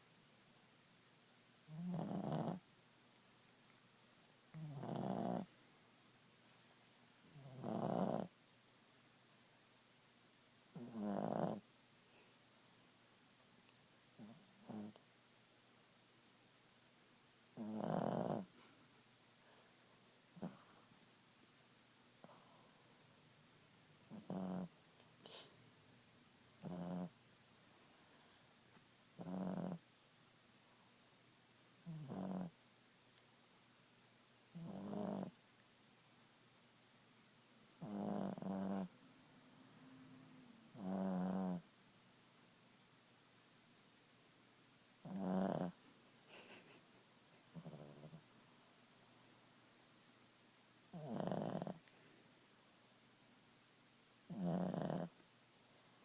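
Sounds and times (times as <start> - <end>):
dog snoring: 1.7 - 2.6, 4.5 - 5.5, 7.3 - 8.4, 10.7 - 11.6, 14.2 - 15.0, 17.6 - 18.6, 20.3 - 20.8, 24.1 - 24.7, 26.6 - 27.2, 29.1 - 29.8, 31.8 - 32.6, 34.5 - 35.4, 37.8 - 38.9, 40.6 - 41.7, 45.0 - 46.6, 47.5 - 48.2, 50.9 - 51.9, 54.3 - 55.2.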